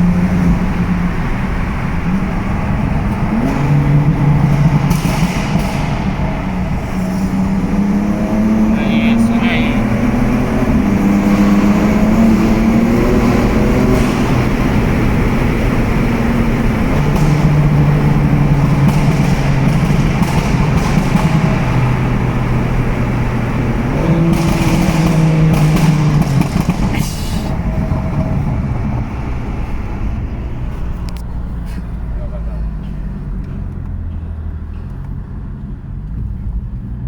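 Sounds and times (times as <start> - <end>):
exhaust pops and crackles: 0.0 - 35.2
car engine revving: 0.0 - 37.0.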